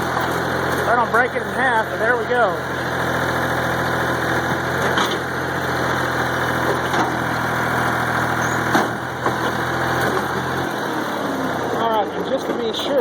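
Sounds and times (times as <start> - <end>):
backhoe engine running: 0.0 - 13.0.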